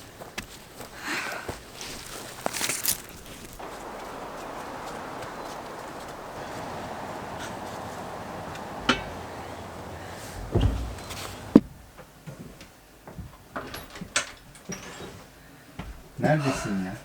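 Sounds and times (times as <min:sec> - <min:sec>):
door thumping shut: 0:08.8 - 0:11.8.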